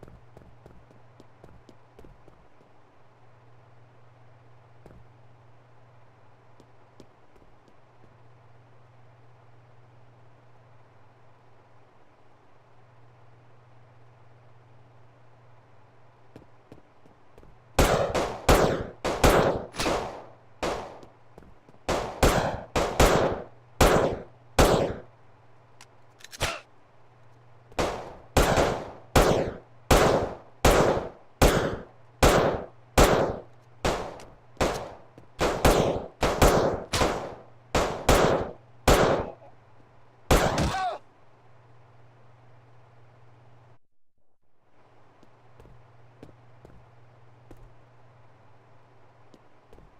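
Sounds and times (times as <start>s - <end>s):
faint steady hum: 0.0s - 49.9s.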